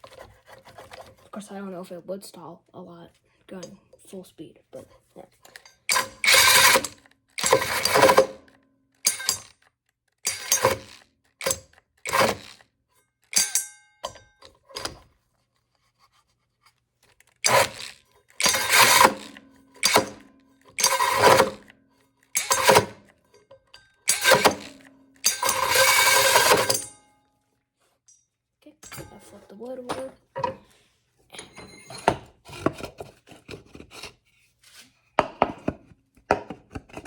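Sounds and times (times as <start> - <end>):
drill hole saw cutting wood: 5.9 - 8.4, 10.3 - 12.6, 17.4 - 21.7, 22.4 - 23.0, 24.1 - 26.8.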